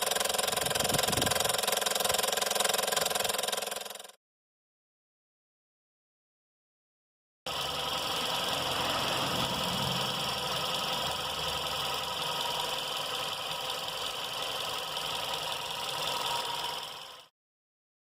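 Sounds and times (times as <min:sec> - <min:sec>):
car engine idling: 0:07.5 - 0:15.7.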